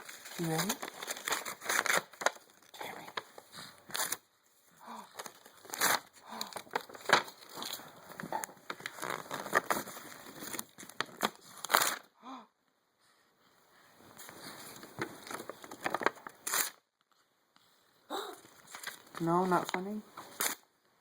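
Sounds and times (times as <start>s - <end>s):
girl fake sneezing: 18.1s - 18.4s.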